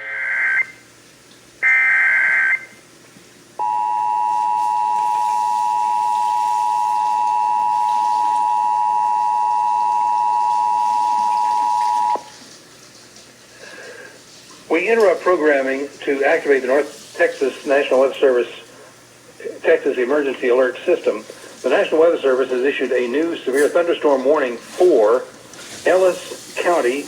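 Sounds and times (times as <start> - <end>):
two-tone attention signal: 1.6 - 2.8, 3.6 - 12.3.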